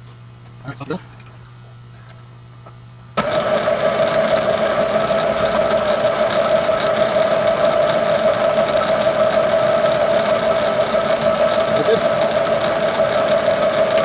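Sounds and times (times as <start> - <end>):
milling machine whining: 3.2 - 14.0.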